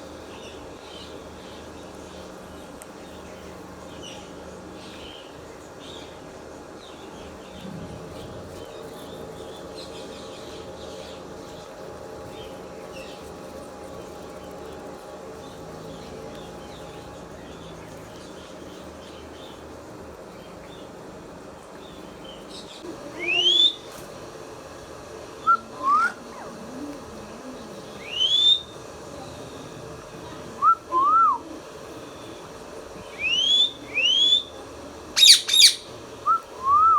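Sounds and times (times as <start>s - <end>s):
parrot whistling: 23.2s - 23.8s, 28.0s - 28.7s, 33.2s - 34.5s, 35.2s - 36.9s.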